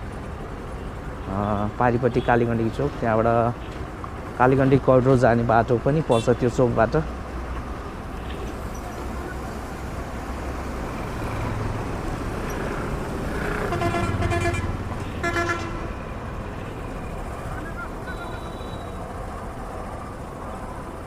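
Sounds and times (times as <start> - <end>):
road traffic: 0.0 - 21.0
vehicle horn honking: 6.1 - 6.4, 13.7 - 15.9, 17.7 - 19.0.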